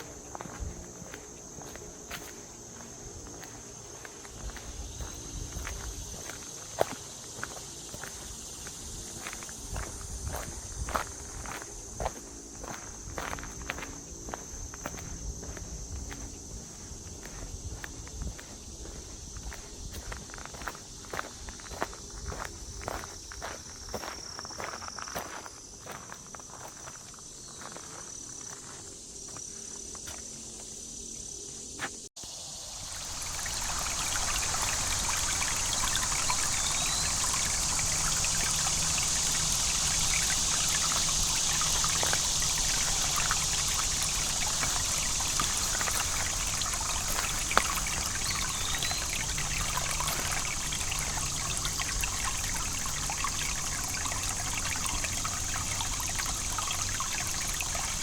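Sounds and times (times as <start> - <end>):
insects buzzing high tone: 0.0 - 58.0
creek babbling over stones: 32.2 - 58.0.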